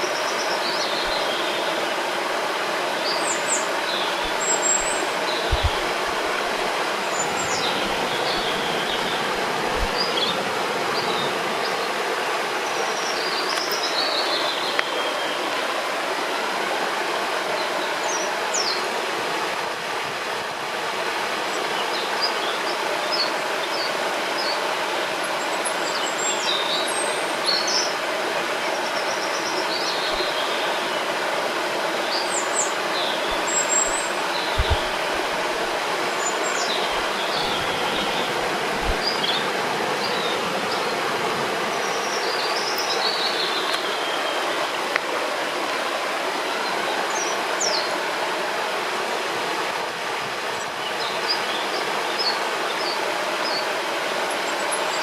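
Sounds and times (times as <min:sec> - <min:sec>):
songbirds chirping: 0:00.0 - 0:16.5, 0:21.4 - 0:48.3
river flowing: 0:00.0 - 0:55.0.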